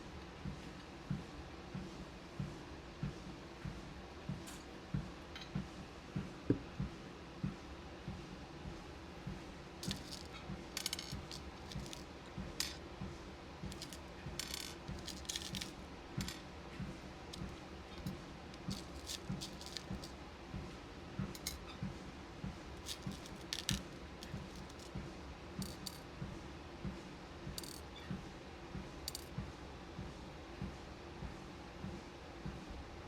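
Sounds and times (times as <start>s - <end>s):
beads and pins clicking: 9.8s - 12.8s, 13.7s - 16.4s, 17.3s - 20.2s, 21.4s - 21.6s, 22.8s - 24.9s, 25.6s - 26.0s, 27.6s - 27.9s, 29.1s - 29.3s
walking pad humming: 9.8s - 12.8s, 13.7s - 20.1s, 22.8s - 24.9s.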